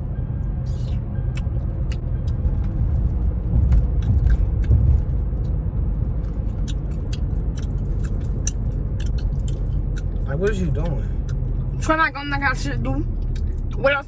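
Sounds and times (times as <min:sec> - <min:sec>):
road and engine rumble: 0:00.0 - 0:14.0.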